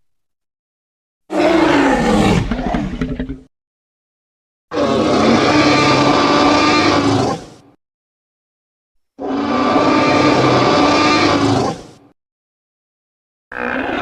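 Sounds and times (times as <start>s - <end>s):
creature roar: 1.3s - 3.5s, 4.7s - 7.6s, 9.2s - 12.0s, 13.5s - 14.0s.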